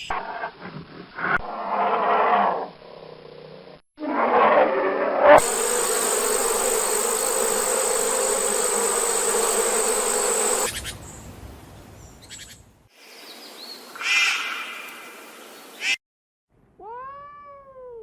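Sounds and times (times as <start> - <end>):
insect buzzing: 5.3 - 10.8.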